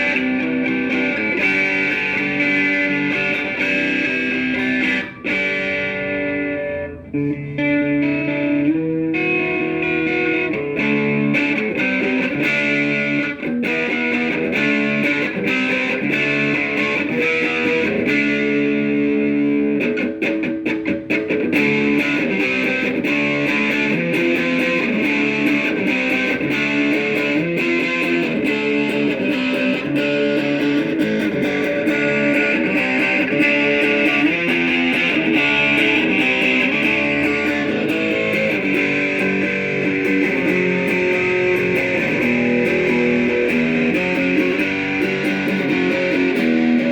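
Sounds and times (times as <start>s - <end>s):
overdriven electric guitar: 0.0s - 46.9s.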